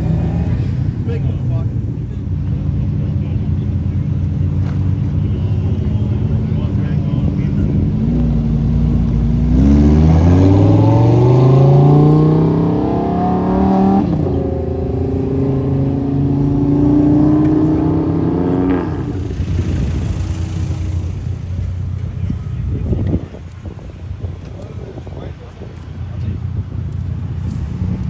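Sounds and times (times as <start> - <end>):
car engine accelerating hard: 4.6 - 22.1.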